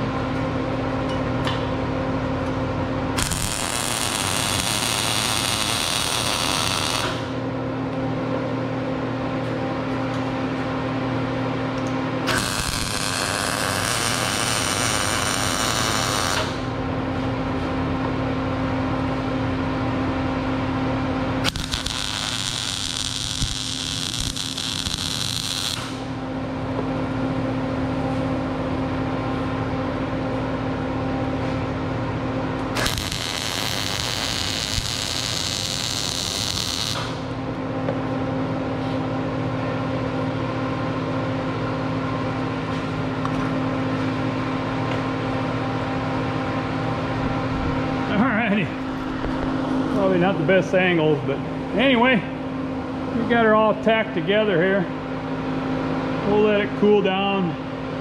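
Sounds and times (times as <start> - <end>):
steady electrical hum: 0.0 - 58.0
welding: 3.2 - 7.4, 12.3 - 16.7, 21.4 - 26.0, 32.7 - 37.3.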